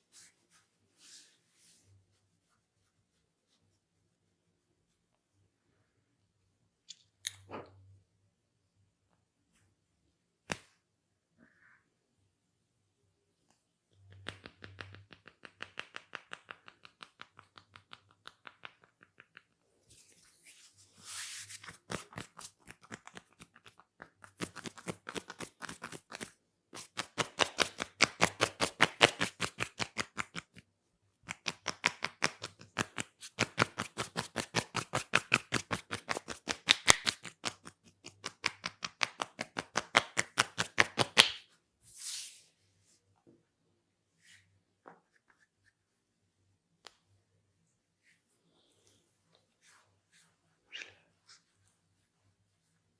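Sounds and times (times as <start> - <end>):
hair crackling under fingers: 14.1 - 20.1, 21.6 - 30.6, 31.2 - 41.5.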